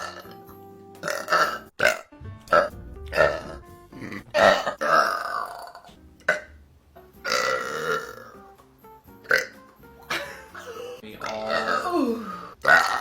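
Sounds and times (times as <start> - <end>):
girls burping: 7.2 - 8.4, 9.3 - 13.0.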